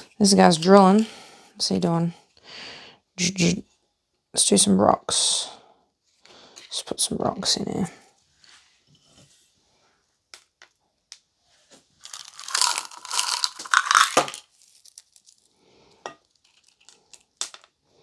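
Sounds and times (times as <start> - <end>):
candy rocks clicking: 12.0 - 15.5, 16.5 - 17.7
plastic packet crinkling: 12.0 - 15.5, 16.4 - 17.6.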